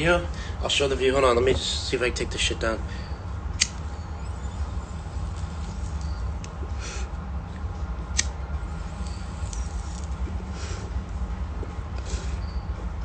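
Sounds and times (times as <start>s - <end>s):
sharp click: 3.6s - 3.9s, 8.1s - 8.4s
breathy hiss: 6.7s - 7.2s, 8.6s - 11.1s.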